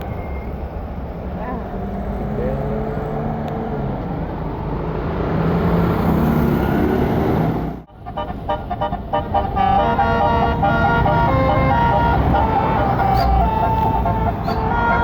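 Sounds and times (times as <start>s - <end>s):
bus engine running: 0.0s - 15.0s
multi-tone bus horn chords: 7.9s - 15.0s.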